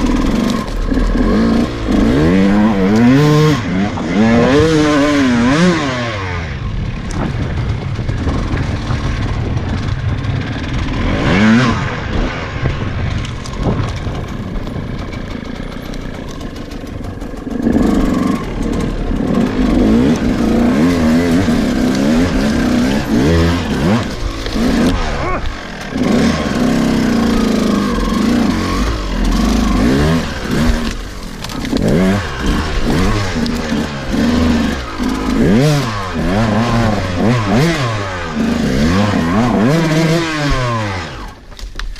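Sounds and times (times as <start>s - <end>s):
dirt bike engine revving: 0.0s - 41.5s.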